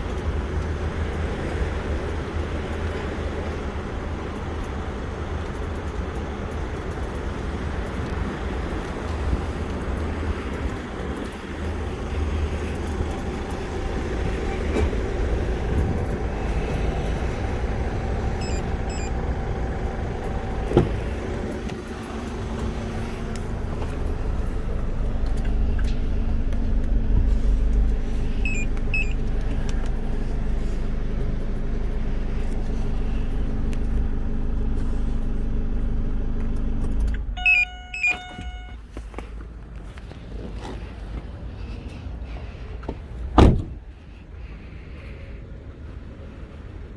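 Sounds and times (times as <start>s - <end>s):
car engine idling: 0.0s - 46.9s
short electronic beeps: 18.4s - 19.2s, 28.4s - 29.2s, 37.4s - 38.8s.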